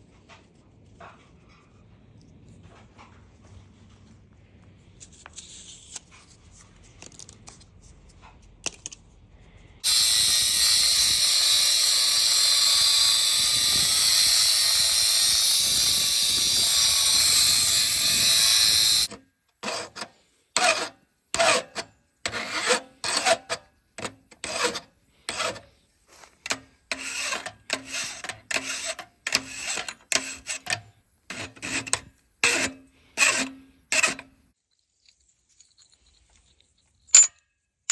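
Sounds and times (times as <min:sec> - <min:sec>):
rasping strokes on metal: 0:09.8 - 0:34.4.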